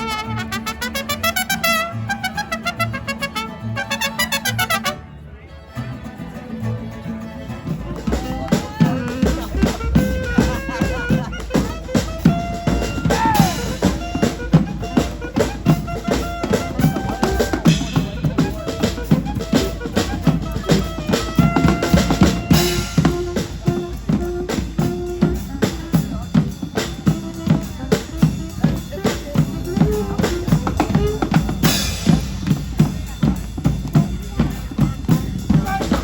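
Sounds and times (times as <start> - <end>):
drum kit beat: 0.0 - 3.4, 7.6 - 36.0
held horn notes: 0.0 - 5.1, 8.2 - 36.0.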